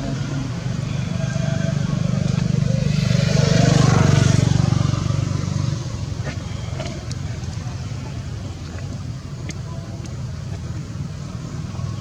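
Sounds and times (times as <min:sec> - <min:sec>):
vehicle engine passing by: 0:00.0 - 0:08.4.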